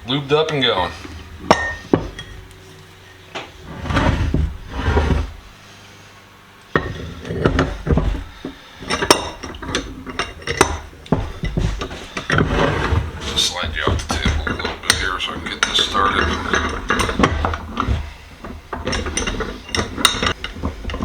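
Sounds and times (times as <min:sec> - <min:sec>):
soft rubbing and shuffling: 0:11.2 - 0:21.0.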